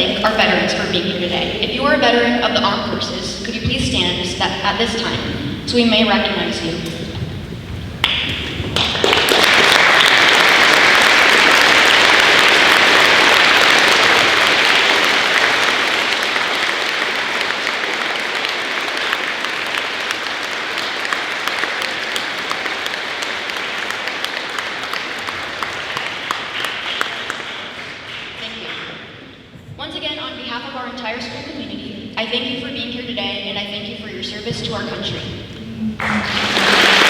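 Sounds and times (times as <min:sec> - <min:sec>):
audience applauding: 0:08.0 - 0:29.0, 0:36.0 - 0:37.0.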